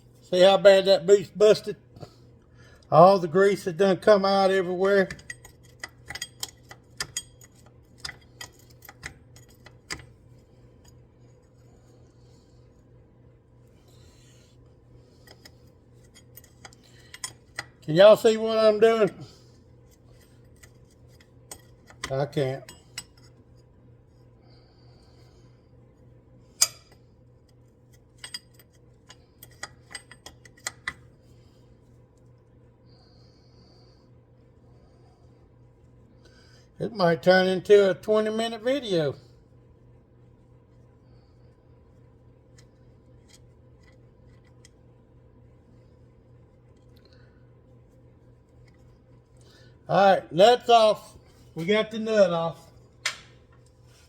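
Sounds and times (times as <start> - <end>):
wrench clicking on metal: 5.1 - 10.0.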